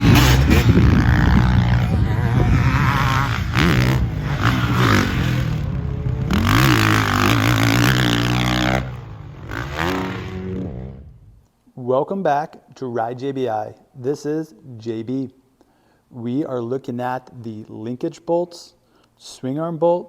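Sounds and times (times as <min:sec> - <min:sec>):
motocross bike engine revving: 0:00.0 - 0:11.3.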